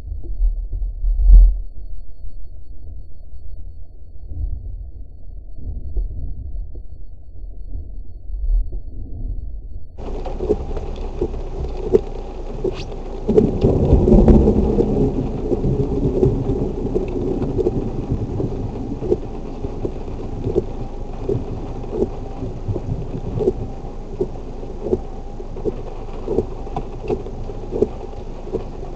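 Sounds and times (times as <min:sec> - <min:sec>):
heavy rain: 0:10.0 - 0:28.9
sharp rain taps: 0:10.0 - 0:28.9
thunder rumble: 0:10.0 - 0:28.9.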